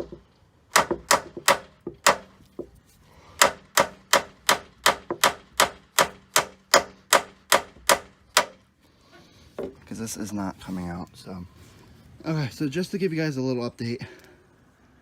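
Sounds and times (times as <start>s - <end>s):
hammer striking steel punch: 0.0s - 2.4s, 3.4s - 8.6s.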